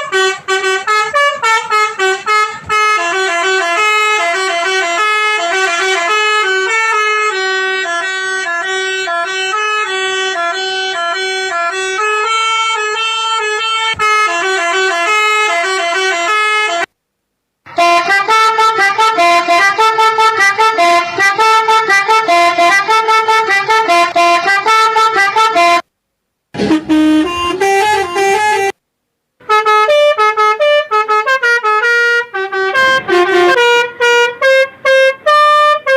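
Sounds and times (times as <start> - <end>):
toy pianika playing horn-like tune: 17.7 - 25.8, 26.6 - 28.8, 29.5 - 35.9.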